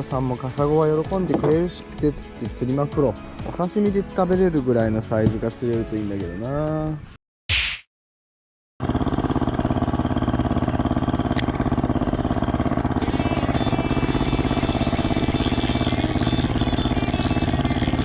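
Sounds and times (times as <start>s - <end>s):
small outboard motor running: 0.2s - 2.4s, 8.8s - 18.0s.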